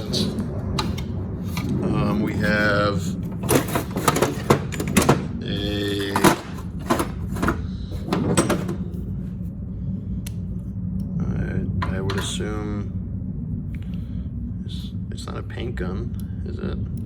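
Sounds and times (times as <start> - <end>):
steady low hum: 0.0 - 17.0
metal tools clinking: 3.3 - 5.2, 5.8 - 9.0.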